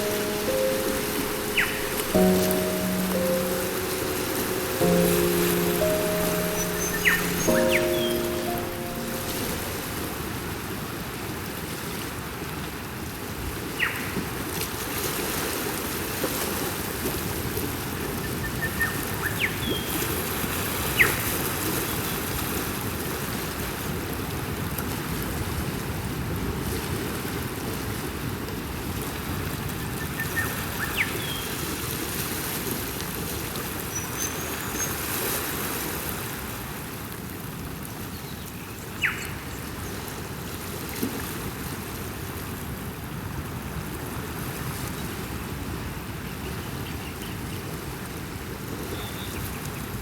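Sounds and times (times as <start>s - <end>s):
faint bird chirps: 0.0s - 10.1s
ocean surf rushing: 0.0s - 10.3s.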